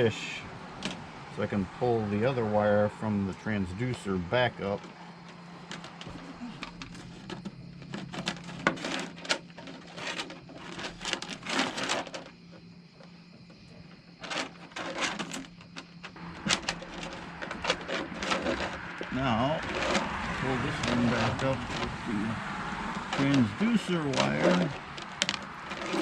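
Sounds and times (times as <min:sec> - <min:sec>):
wire rubbing and scraping: 0:04.6 - 0:12.7, 0:14.2 - 0:26.0.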